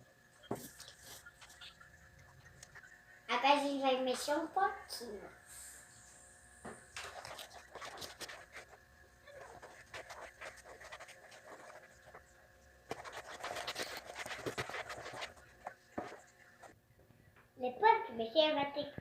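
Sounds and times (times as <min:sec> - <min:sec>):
utensil scraping a bowl: 0:07.0 - 0:16.7.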